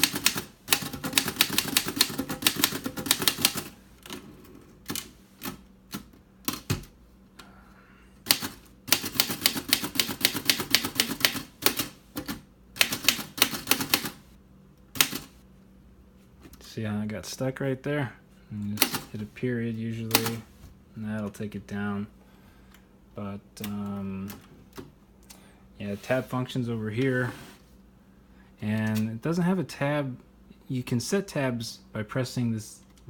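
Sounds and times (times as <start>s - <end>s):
manual typewriter typing: 0.0s - 4.2s, 4.8s - 6.9s, 8.2s - 14.2s, 15.0s - 15.4s, 18.8s - 19.1s.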